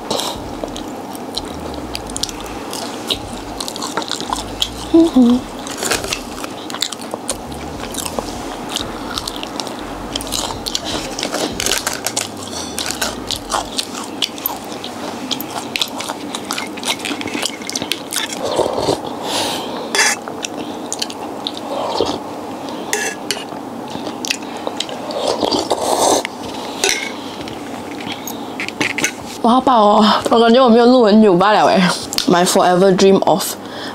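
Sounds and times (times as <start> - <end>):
wet chewing: 0.0 - 19.1
crunchy bites: 0.1 - 17.2.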